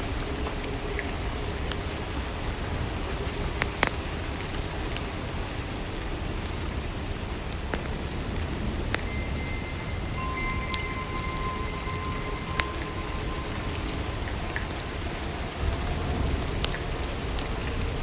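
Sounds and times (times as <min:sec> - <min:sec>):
rain hiss: 0:00.0 - 0:18.0
wood fire crackling: 0:00.0 - 0:18.0
faint high-pitched chirping: 0:08.2 - 0:14.8.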